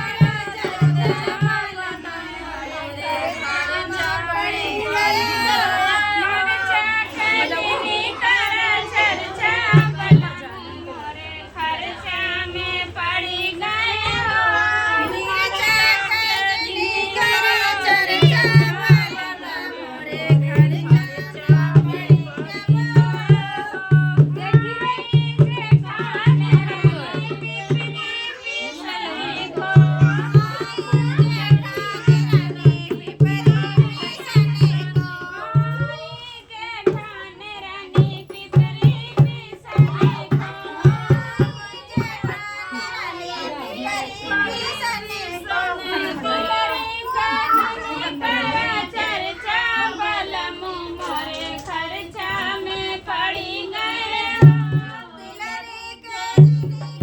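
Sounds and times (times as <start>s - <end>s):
low hand-drum beat: 0.0s - 2.0s, 9.7s - 10.4s, 17.7s - 19.4s, 20.1s - 28.3s, 29.3s - 36.2s, 38.0s - 42.4s, 54.4s - 55.0s, 56.4s - 57.0s
person singing: 47.1s - 48.0s.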